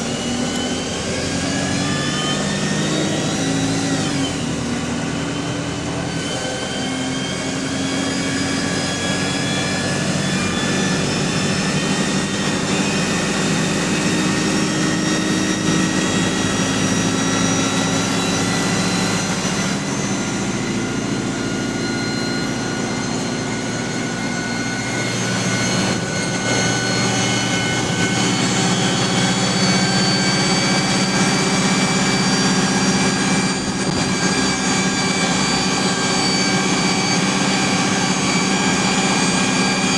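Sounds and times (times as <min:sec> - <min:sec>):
bus drive noise: 0:00.0 - 0:39.9
transmission whine: 0:00.0 - 0:39.9.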